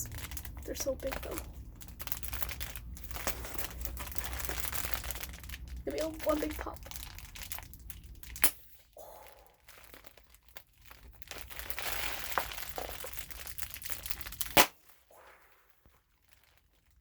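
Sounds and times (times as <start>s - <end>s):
plastic packing crinkling: 0.0s - 17.0s
air pillow popping: 14.5s - 15.4s.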